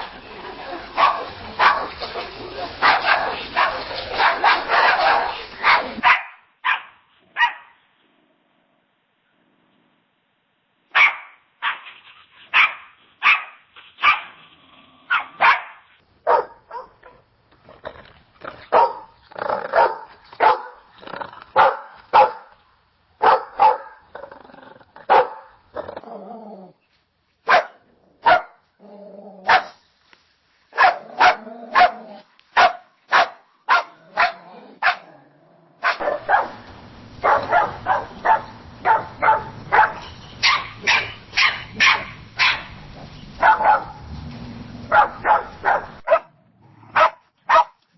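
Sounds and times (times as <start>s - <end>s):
dogs barking: 1.0s - 2.0s, 2.7s - 7.8s, 10.9s - 11.9s, 12.5s - 14.4s, 15.1s - 17.2s, 18.7s - 20.9s, 21.6s - 22.6s, 23.2s - 24.1s, 25.1s - 25.6s, 27.5s - 28.6s, 29.4s - 29.8s, 30.8s - 32.0s, 32.6s - 35.1s, 35.8s - 42.8s, 43.4s - 44.1s, 44.8s - 46.3s, 46.9s - 47.8s
steady hiss: 29.6s - 31.0s.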